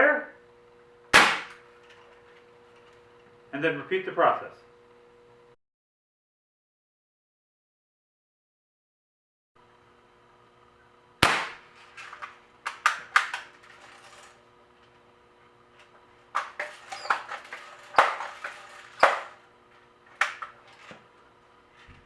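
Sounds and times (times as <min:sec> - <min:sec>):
air rifle firing cracks: 0:01.2 - 0:01.6, 0:11.2 - 0:14.2, 0:16.4 - 0:19.4.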